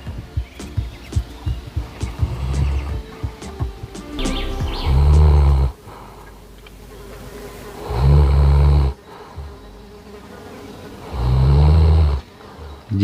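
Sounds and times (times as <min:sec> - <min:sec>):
dog snoring: 0:07.8 - 0:09.0, 0:11.0 - 0:12.2.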